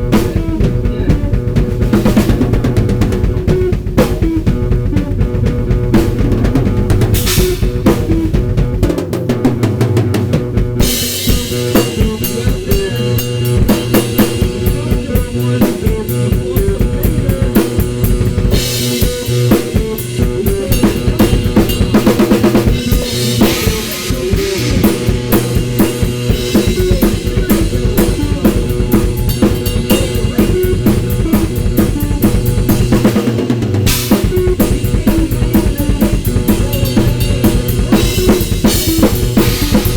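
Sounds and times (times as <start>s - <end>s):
bass drum: 0.0s - 39.9s
cymbals washing: 10.8s - 39.9s
sampled guitar riff: 10.8s - 39.9s.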